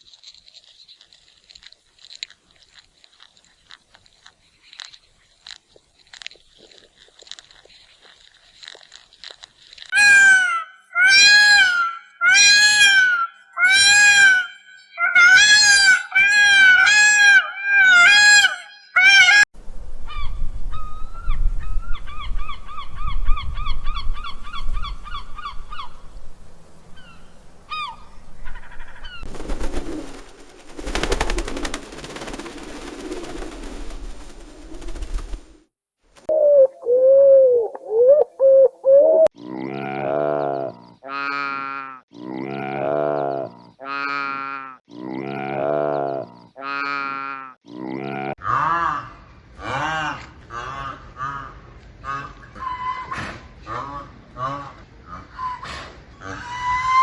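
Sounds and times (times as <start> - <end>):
rapid chattering notes: 29.3 - 35.6.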